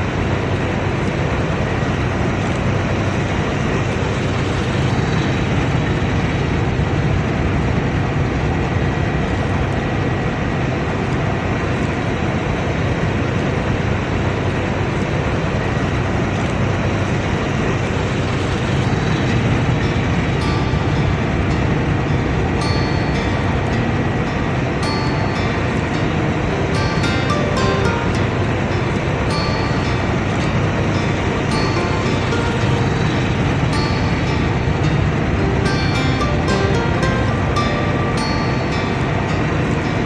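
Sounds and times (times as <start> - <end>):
combine harvester engine drone: 0.0 - 40.0
dense mechanical noise: 0.0 - 40.0
faint high whine: 16.8 - 40.0.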